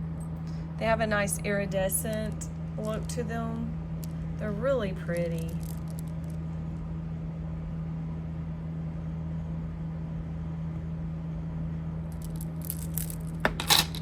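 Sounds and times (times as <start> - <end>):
steady low hum: 0.0 - 14.0
jewelry clinking and rattling: 1.8 - 3.3, 4.8 - 6.4, 12.1 - 14.0.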